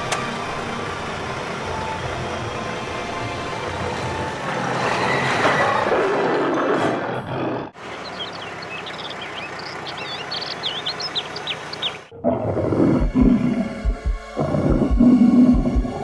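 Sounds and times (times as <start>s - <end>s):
birds chirping: 7.8s - 16.0s
low animal roar: 12.1s - 13.8s, 14.4s - 16.0s.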